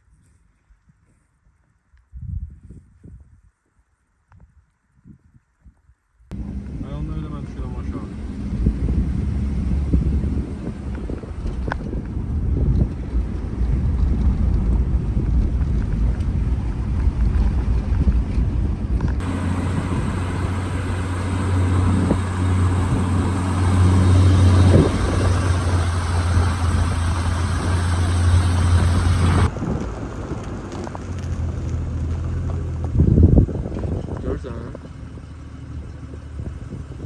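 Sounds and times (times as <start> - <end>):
rushing noise: 6.3 - 29.6
vehicle engine droning: 6.3 - 37.0.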